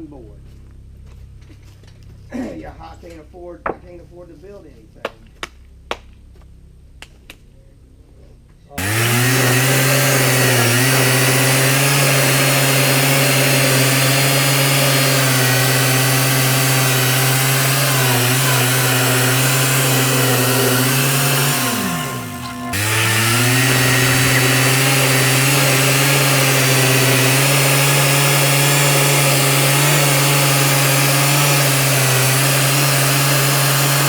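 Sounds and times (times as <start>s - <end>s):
gasoline engine running fast: 8.8s - 34.0s.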